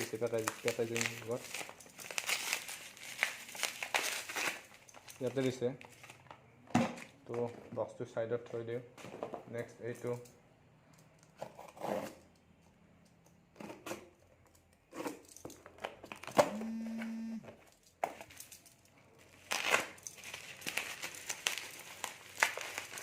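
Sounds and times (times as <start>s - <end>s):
packaging crinkling and tearing: 0.0s - 6.4s, 19.1s - 23.0s
short steady buzz: 16.5s - 17.4s.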